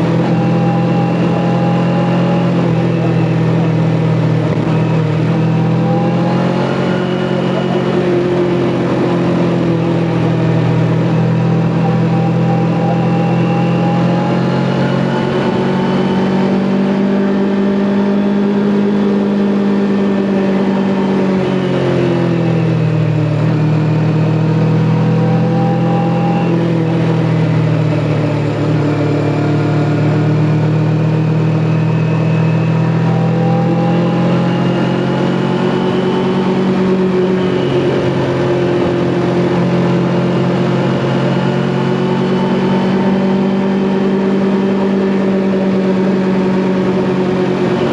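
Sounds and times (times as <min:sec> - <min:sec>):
motorcycle engine running: 0:00.0 - 0:47.9.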